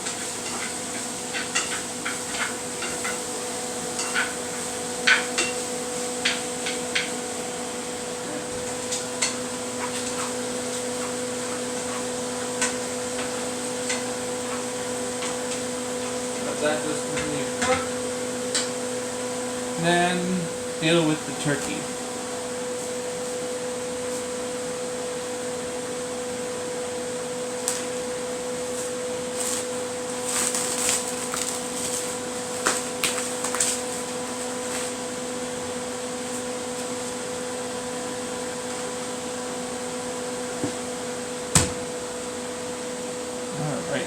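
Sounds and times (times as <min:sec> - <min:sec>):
steady mechanical hum: 0:00.0 - 0:44.0
crinkly rustles: 0:29.4 - 0:34.1.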